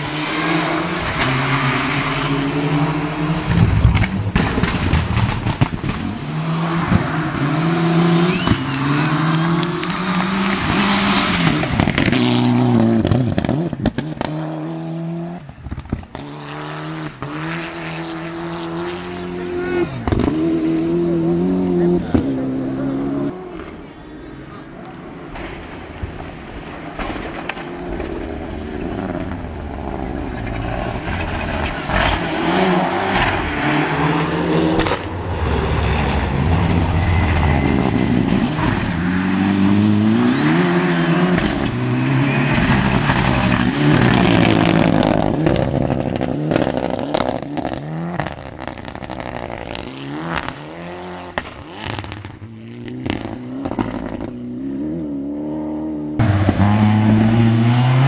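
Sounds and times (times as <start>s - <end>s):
rally car engine revving: 0.0s - 58.0s.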